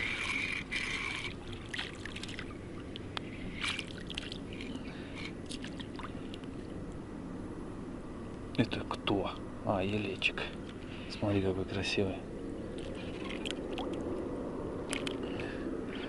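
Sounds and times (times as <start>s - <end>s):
river water lapping at bank: 0.0s - 6.8s, 12.2s - 16.0s
small splashes and clicks: 0.2s - 4.8s, 12.8s - 14.1s, 14.9s - 15.2s.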